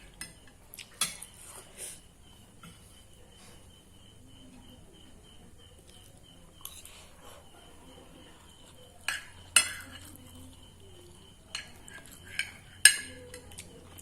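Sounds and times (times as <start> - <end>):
cutlery clinking on a plate: 0.1 - 1.4, 9.0 - 10.4, 11.5 - 14.0.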